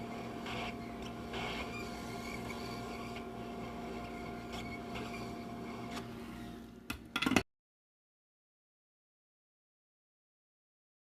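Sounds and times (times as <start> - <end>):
electrical hum: 0.0 - 6.9.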